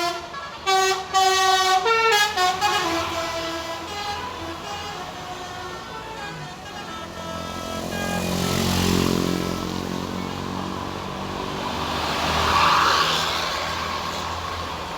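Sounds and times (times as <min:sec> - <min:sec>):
musical horn: 0:00.0 - 0:09.8
bus engine running: 0:00.0 - 0:12.4
road noise: 0:00.0 - 0:14.9.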